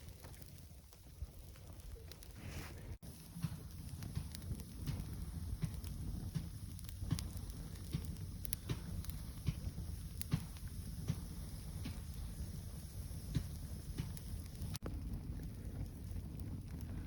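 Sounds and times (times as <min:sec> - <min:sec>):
campfire crackling and popping: 0:00.0 - 0:17.0.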